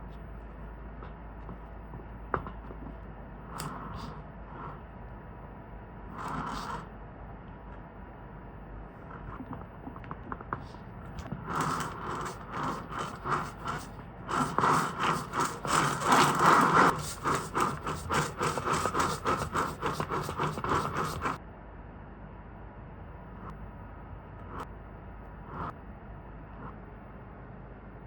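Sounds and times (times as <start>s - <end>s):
utensil scraping in a bowl: 6.1s - 6.9s, 11.3s - 21.4s.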